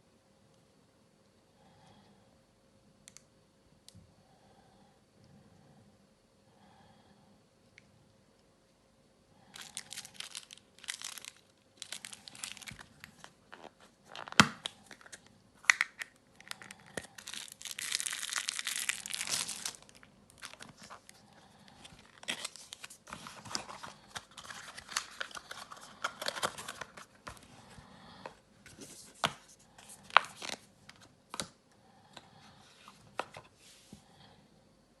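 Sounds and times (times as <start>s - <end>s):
packaging crinkling and tearing: 9.5s - 27.4s, 29.8s - 31.5s
packaging rustle: 9.5s - 27.5s, 28.7s - 31.4s.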